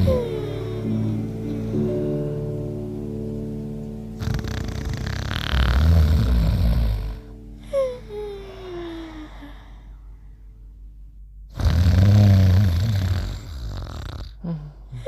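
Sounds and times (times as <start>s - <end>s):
loud low cartoon snore: 4.2s - 7.3s, 11.5s - 15.0s.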